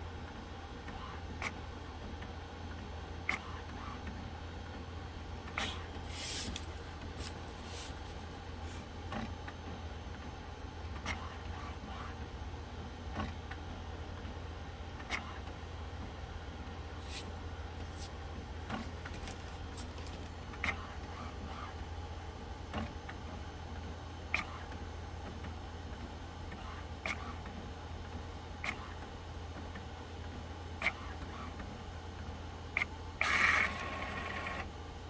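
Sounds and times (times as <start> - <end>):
printer low hum: 0.0 - 35.0
printer motor whirring: 32.8 - 34.8.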